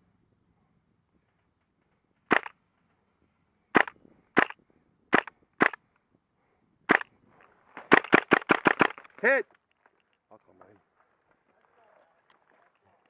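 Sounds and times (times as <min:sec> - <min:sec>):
airsoft gun shots: 0:02.3 - 0:02.5, 0:03.8 - 0:05.8, 0:06.9 - 0:07.1, 0:07.8 - 0:09.1.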